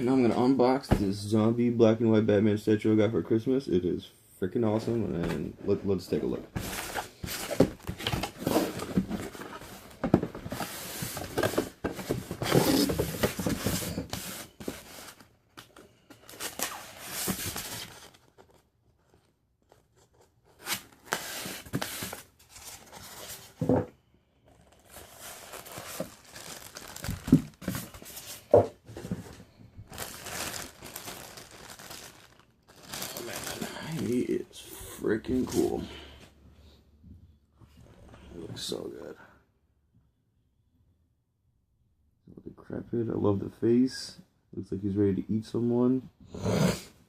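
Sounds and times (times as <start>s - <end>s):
packaging tearing and crinkling: 24.7s - 28.0s, 29.9s - 34.2s.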